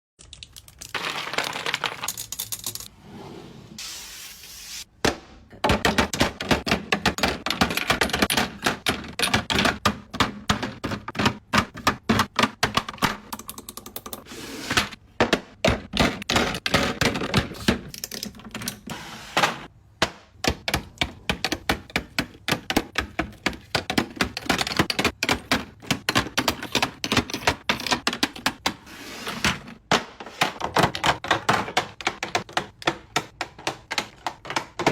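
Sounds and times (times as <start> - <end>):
tapping on plastic makeup cases: 5.5 - 14.0, 20.0 - 28.8, 29.8 - 34.9.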